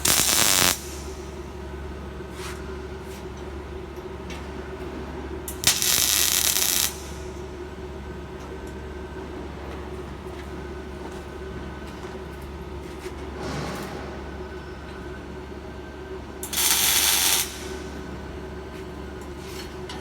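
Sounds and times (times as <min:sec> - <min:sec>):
electric arc crackling hiss: 0:00.0 - 0:01.2, 0:05.6 - 0:07.2, 0:16.4 - 0:17.9
welding equipment humming: 0:00.0 - 0:01.9, 0:05.4 - 0:07.6, 0:16.4 - 0:19.0.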